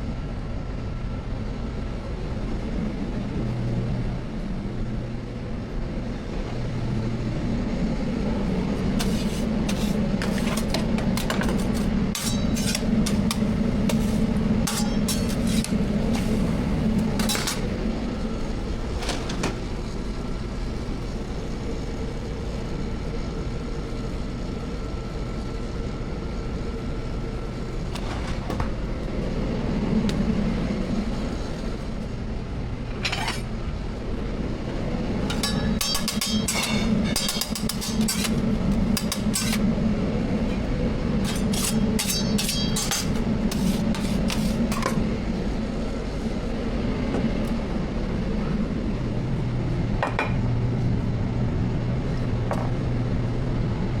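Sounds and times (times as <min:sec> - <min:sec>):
metal cooking utensils clattering: 0:10.2 - 0:13.4, 0:14.7 - 0:16.3, 0:35.3 - 0:38.4, 0:39.0 - 0:39.6, 0:41.2 - 0:44.9.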